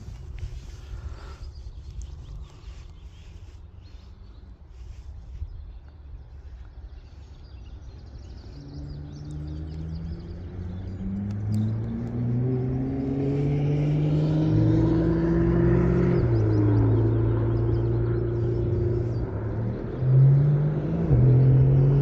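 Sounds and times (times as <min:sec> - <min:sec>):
low outdoor rumble: 0:00.0 - 0:22.0
vehicle engine accelerating: 0:06.4 - 0:22.0.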